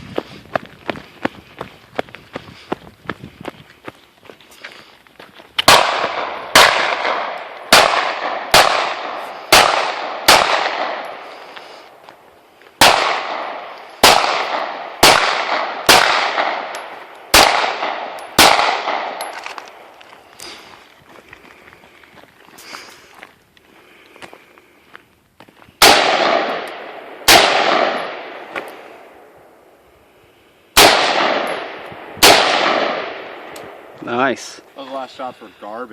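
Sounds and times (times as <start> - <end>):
gunshots with long echo: 5.6 - 11.5, 12.8 - 19.9, 25.8 - 29.8, 30.7 - 34.3.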